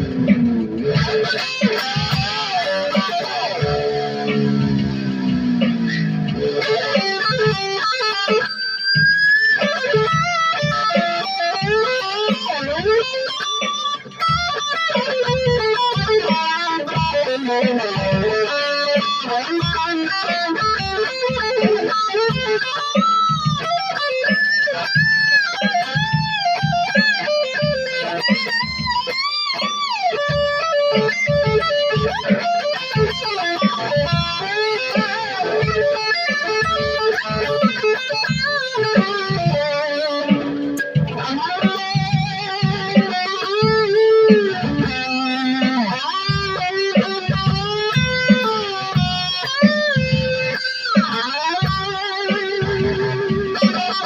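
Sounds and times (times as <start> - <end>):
steady low beat: 0.0 - 8.1, 31.4 - 50.8
electric guitar lead with bends: 0.0 - 54.0.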